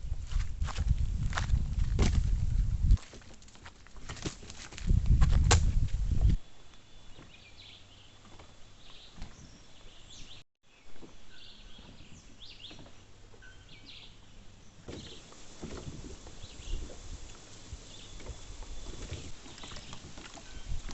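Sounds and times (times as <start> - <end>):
birds chirping: 6.2 - 20.8.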